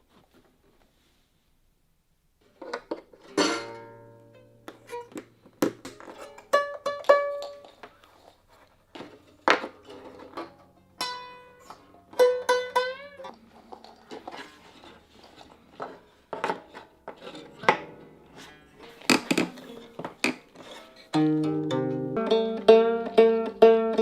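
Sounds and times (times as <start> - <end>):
plucked zither strings: 2.6 - 5.2, 6.0 - 7.8, 9.7 - 15.0, 17.1 - 24.0.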